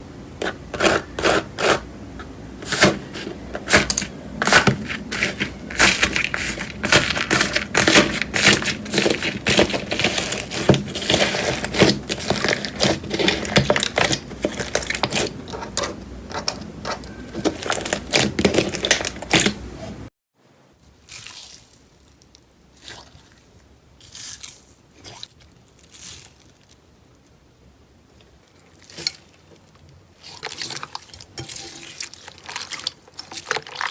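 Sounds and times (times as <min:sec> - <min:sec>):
crunchy slime crackling: 0:00.4 - 0:19.8, 0:21.0 - 0:27.0, 0:28.5 - 0:33.9.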